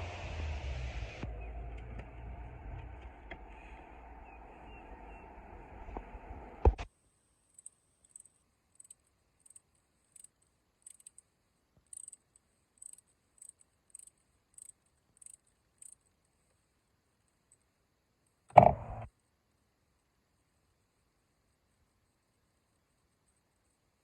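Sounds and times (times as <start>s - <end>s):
faint sharp high clicks: 7.5s - 16.6s.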